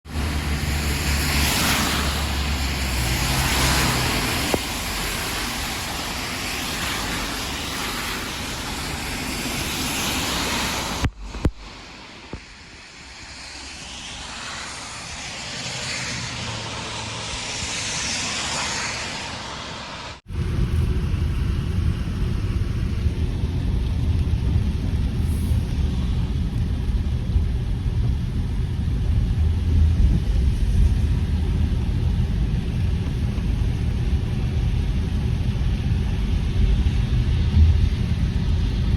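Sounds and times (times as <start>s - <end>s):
heavy rain hissing: 0.1s - 16.0s
low rumble: 0.1s - 38.9s.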